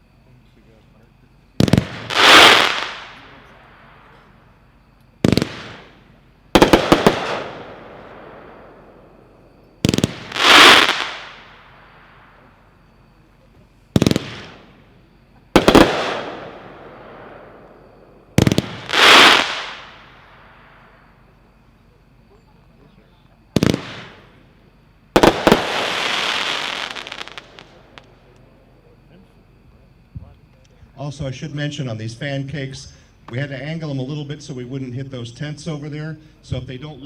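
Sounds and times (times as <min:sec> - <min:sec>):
firework launch cracks: 0:01.6 - 0:03.4, 0:05.2 - 0:06.0, 0:06.6 - 0:09.0, 0:09.8 - 0:12.5, 0:14.0 - 0:14.7, 0:15.6 - 0:17.5, 0:18.3 - 0:20.9, 0:23.6 - 0:24.2, 0:25.2 - 0:28.1
fireworks hissing and crackling: 0:01.6 - 0:04.6, 0:05.2 - 0:09.1, 0:09.8 - 0:21.0, 0:23.4 - 0:24.4, 0:25.1 - 0:28.5.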